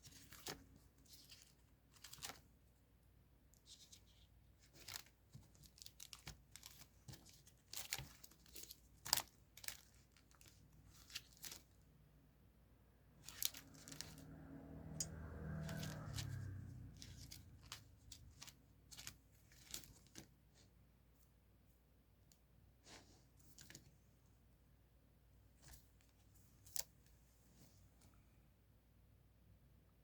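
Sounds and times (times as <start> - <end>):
paper crinkling: 0.0 - 2.6, 3.6 - 11.8, 13.2 - 14.2, 15.6 - 20.4.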